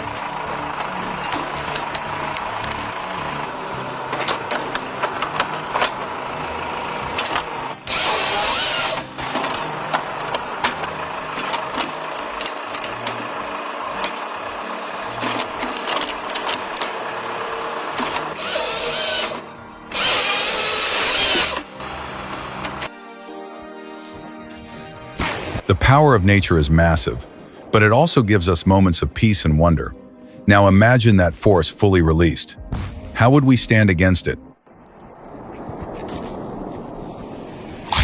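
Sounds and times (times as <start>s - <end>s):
firewood processor running: 0.0s - 22.9s.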